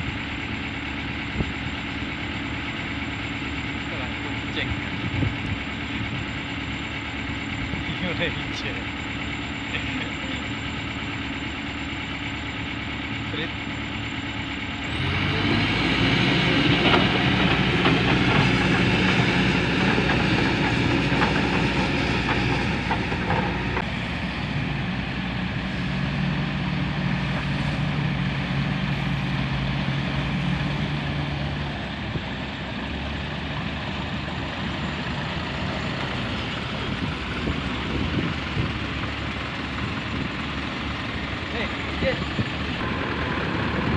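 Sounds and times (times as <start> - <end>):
diesel machinery engine running: 0.0 - 43.9
machinery clanks and knocks: 16.3 - 24.1.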